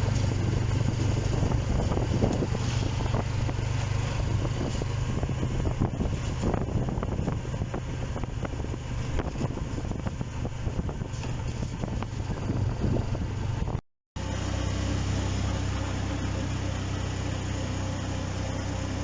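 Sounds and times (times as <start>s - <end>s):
rushing noise with crackles: 0.0s - 14.4s
engine running with low hum: 0.0s - 19.0s.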